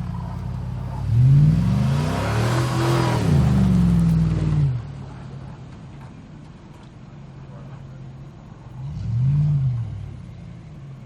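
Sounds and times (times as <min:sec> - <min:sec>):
truck engine revving: 0:00.9 - 0:04.2.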